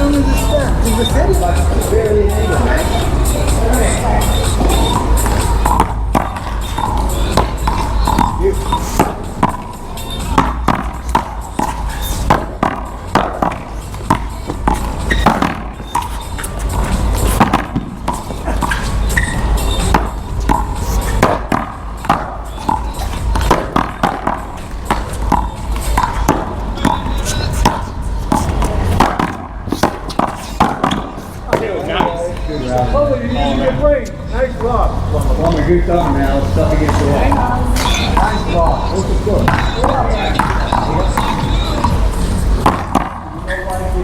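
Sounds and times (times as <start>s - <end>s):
paddles smacking rubber ball: 4.6s - 9.7s, 10.3s - 16.2s, 16.8s - 19.3s, 19.9s - 32.2s, 39.4s - 43.4s.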